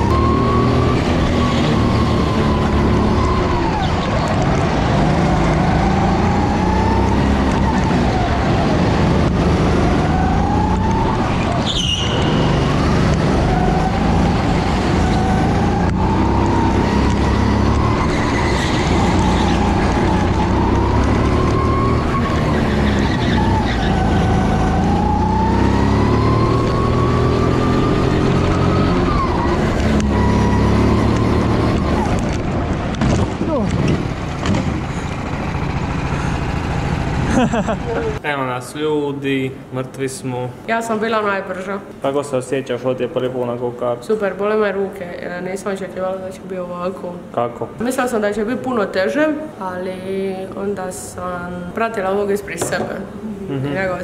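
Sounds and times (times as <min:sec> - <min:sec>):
go-kart engine revving: 0:00.0 - 0:38.2.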